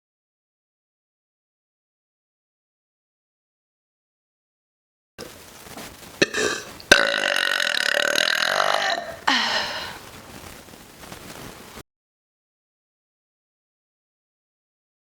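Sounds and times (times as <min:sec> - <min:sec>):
woman burping: 0:06.2 - 0:10.0.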